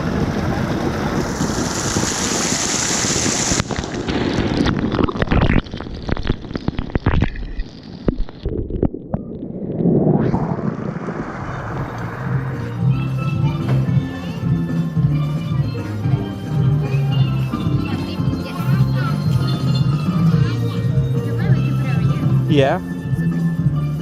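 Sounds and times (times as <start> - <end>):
wind buffeting microphone: 0.0 - 6.4, 8.5 - 13.9
water rushing: 0.0 - 14.0.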